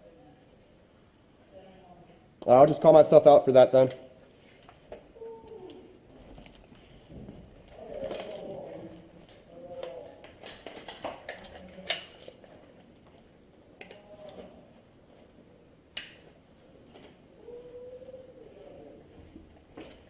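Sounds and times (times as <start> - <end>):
sharp clicks and snaps: 9.3 - 12.4, 15.9 - 16.3.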